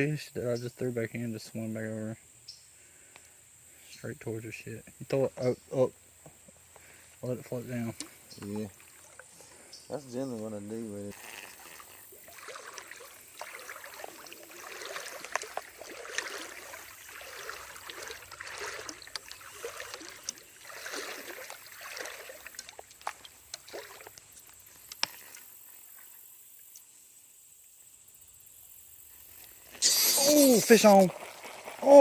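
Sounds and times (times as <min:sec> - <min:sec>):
creek water trickling: 0:02.4 - 0:26.9, 0:28.7 - 0:32.0
small clicks and knocks: 0:22.6 - 0:25.4.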